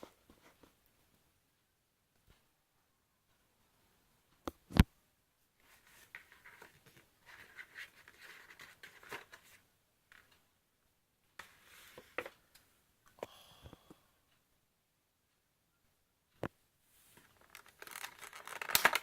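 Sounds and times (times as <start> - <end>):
packaging scraping and rustling: 17.1 - 19.0.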